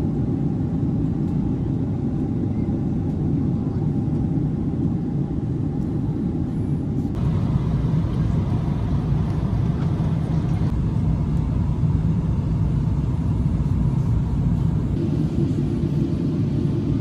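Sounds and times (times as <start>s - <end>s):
jet engine cabin rumble: 0.0s - 17.0s
faint steady whine: 5.8s - 17.0s.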